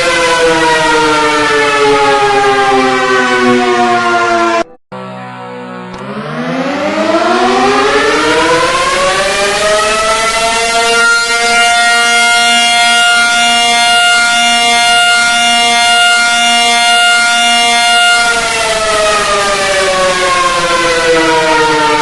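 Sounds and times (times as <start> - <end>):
alarm siren winding down: 0.0 - 22.0.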